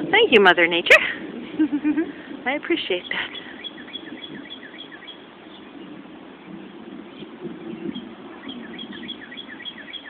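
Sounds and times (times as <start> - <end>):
low rushing wind: 0.0 - 10.0
bird chirping: 2.8 - 10.0.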